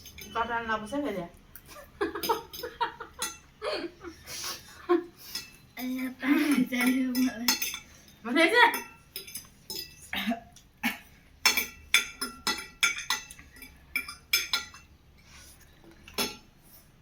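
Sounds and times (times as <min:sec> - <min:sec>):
cutlery clinking against dishes: 0:00.0 - 0:00.4, 0:01.6 - 0:03.5, 0:05.2 - 0:15.0, 0:15.9 - 0:16.5.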